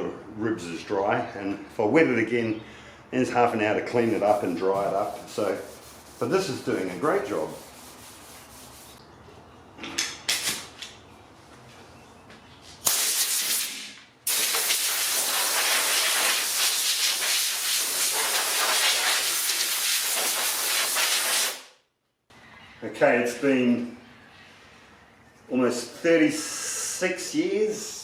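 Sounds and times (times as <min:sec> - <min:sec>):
faint rubbing strokes: 0:03.5 - 0:09.0
paint spray gun hissing: 0:12.9 - 0:21.6.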